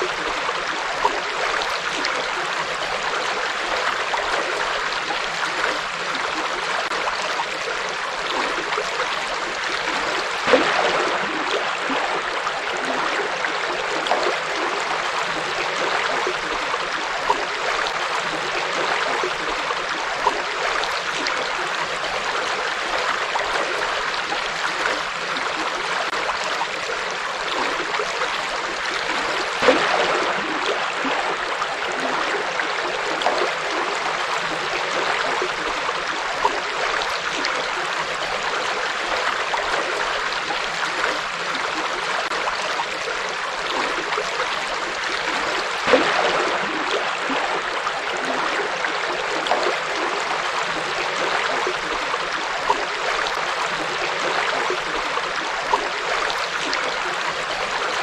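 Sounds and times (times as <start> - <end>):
river flowing: 0.0 - 58.0
water splashes: 0.0 - 58.0.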